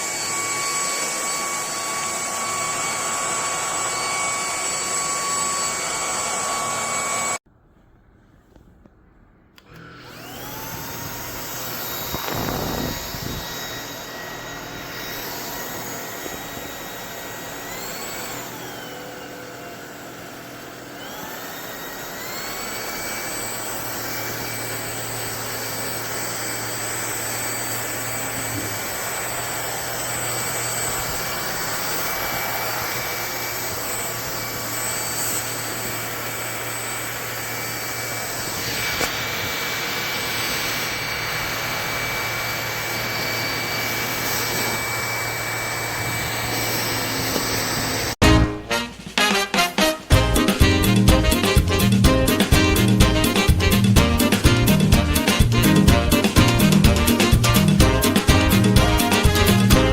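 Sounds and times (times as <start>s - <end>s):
stick vacuum motor whining: 0.0s - 7.4s, 9.6s - 59.9s.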